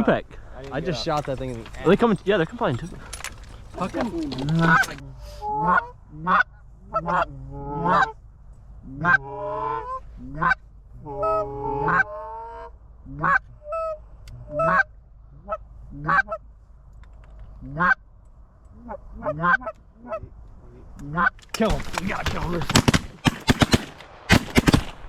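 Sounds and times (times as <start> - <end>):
goose honks and clucks: 3.8 - 8.2, 8.8 - 16.5, 17.6 - 18.0, 18.8 - 20.2, 21.0 - 21.4.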